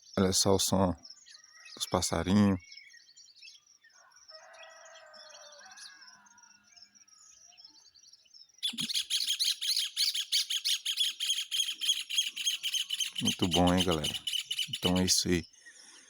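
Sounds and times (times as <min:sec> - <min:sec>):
songbirds chirping: 0:00.0 - 0:16.0
rooster crowing: 0:04.0 - 0:06.7
bird calling in fast chirps: 0:08.6 - 0:16.0.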